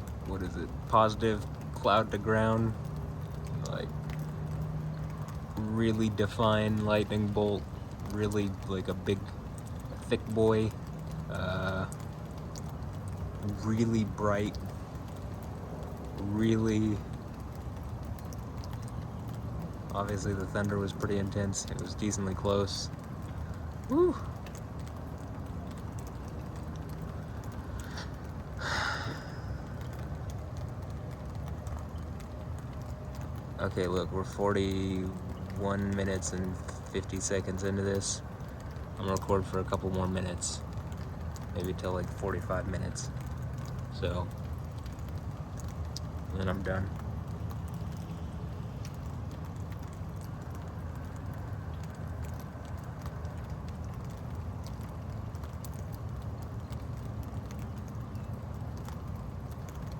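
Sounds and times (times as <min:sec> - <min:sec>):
drips tapping: 0:00.0 - 0:59.9
low background rumble: 0:00.0 - 0:59.9
steady rain: 0:00.0 - 0:59.9
breathy sigh: 0:27.8 - 0:29.7.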